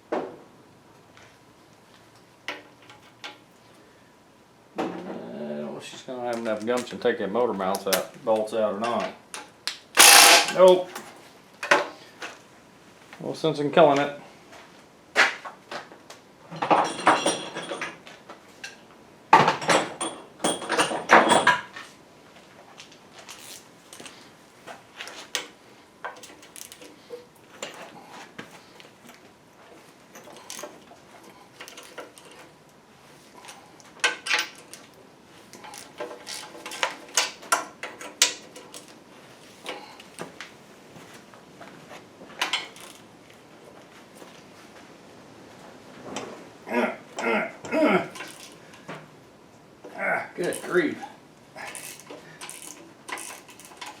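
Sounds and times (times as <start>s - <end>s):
ratchet rapid clicking: 10.0s - 10.6s, 51.7s - 54.0s.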